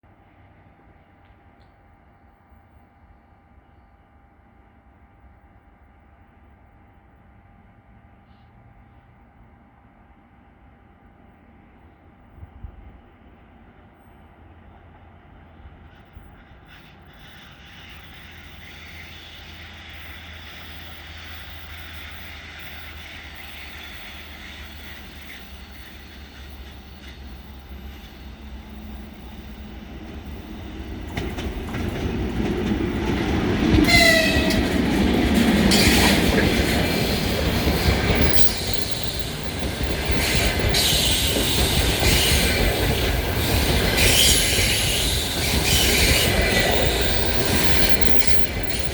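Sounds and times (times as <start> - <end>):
train wheels squealing: 15.8 - 48.9
train wheels clattering over rail joints: 19.6 - 48.9.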